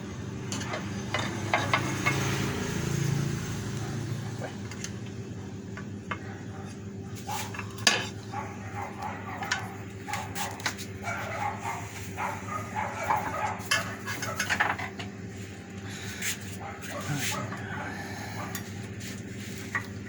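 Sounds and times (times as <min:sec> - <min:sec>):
steady low hum: 0:03.8 - 0:20.0
metal tools clinking and clattering: 0:13.0 - 0:15.1.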